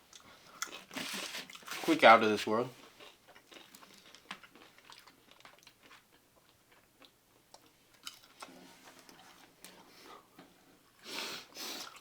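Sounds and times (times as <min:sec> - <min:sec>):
person chewing: 0:00.1 - 0:01.9, 0:02.8 - 0:09.6, 0:11.2 - 0:12.0.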